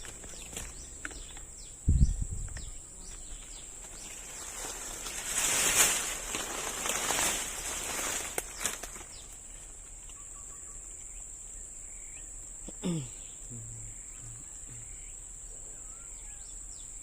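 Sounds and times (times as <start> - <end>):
bird chirps: 0.0 - 5.2, 10.0 - 12.4, 13.1 - 17.0
insect drone: 0.0 - 17.0.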